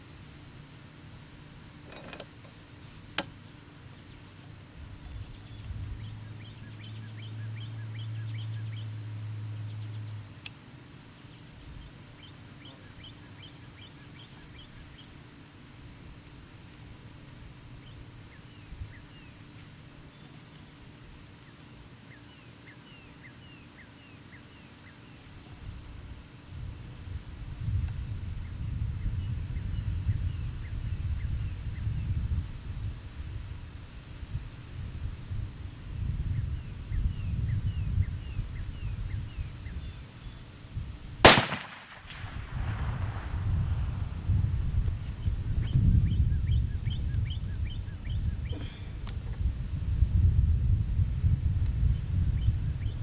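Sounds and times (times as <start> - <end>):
sharp click: 1.9 - 3.4.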